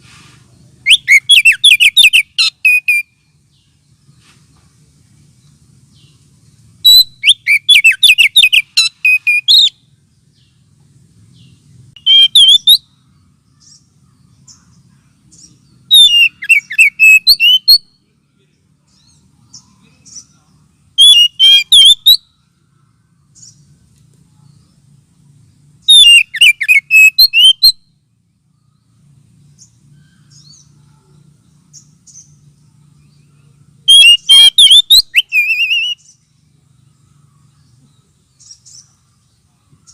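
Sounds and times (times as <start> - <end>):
bird song whistled notes: 0.0 - 39.9
faint low hum: 22.0 - 26.4, 27.7 - 33.9, 36.0 - 39.9.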